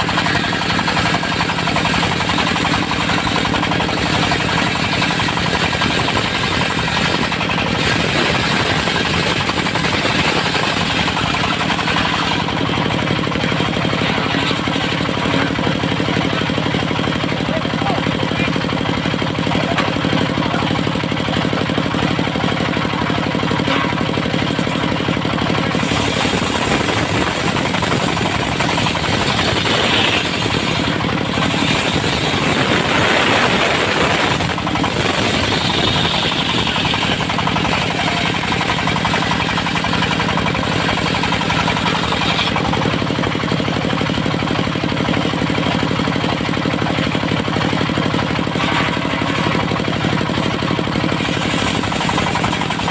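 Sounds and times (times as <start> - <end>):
saw blade cutting wood: 0.0 - 44.9, 47.0 - 52.9
sawmill engine running: 0.0 - 52.9.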